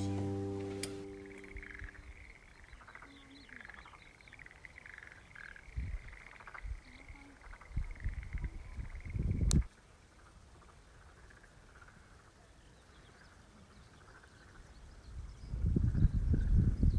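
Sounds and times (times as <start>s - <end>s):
frogs croaking: 1.2s - 9.3s, 10.5s - 14.9s.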